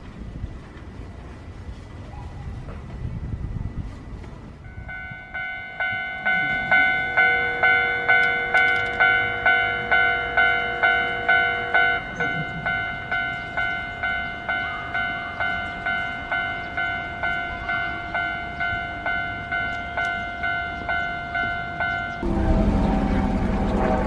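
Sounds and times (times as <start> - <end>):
ringing bell-like tone: 4.7 - 23.8
loud steady rumbling: 22.1 - 24.0.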